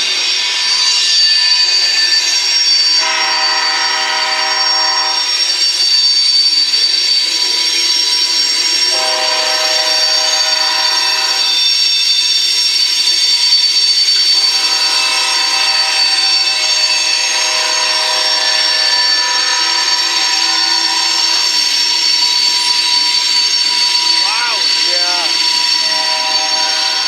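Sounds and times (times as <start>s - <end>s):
train wheels squealing: 0.0s - 27.0s
locomotive air horn: 3.0s - 5.4s, 8.9s - 11.5s, 14.4s - 23.1s, 23.7s - 27.0s.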